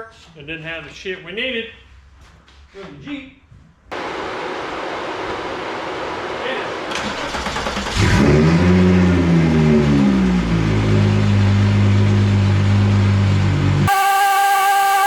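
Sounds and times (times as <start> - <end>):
car engine starting and idling: 3.9 - 13.9.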